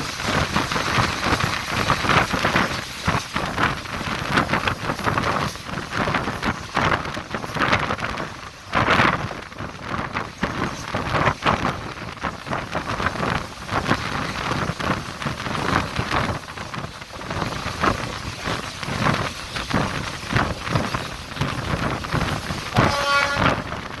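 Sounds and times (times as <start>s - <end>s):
electric train rushing noise: 0.0s - 24.0s
train horn: 22.7s - 24.0s.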